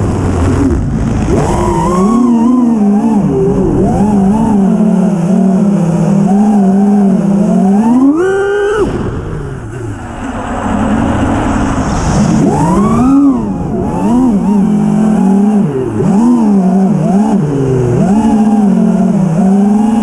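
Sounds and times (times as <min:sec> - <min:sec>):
drone motors whining: 0:00.4 - 0:20.0
rush of air noise: 0:08.8 - 0:16.0.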